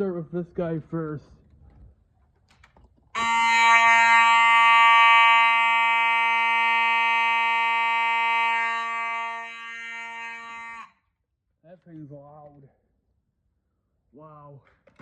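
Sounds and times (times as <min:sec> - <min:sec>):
buzzy fire alarm horn: 0:03.2 - 0:11.0.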